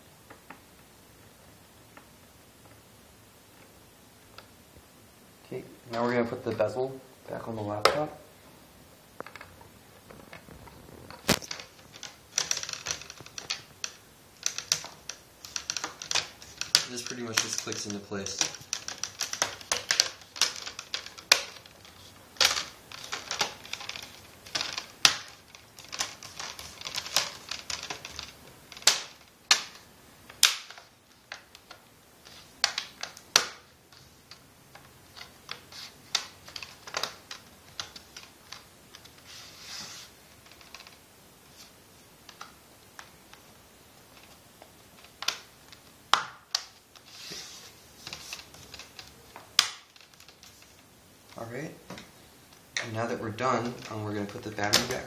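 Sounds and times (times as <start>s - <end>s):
plastic clips snapping: 11.1s - 31.8s, 32.6s - 39.1s, 48.0s - 50.6s.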